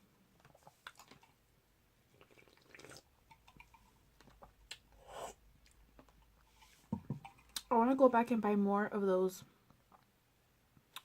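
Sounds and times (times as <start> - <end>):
wet eating and slurping: 2.1 - 5.4.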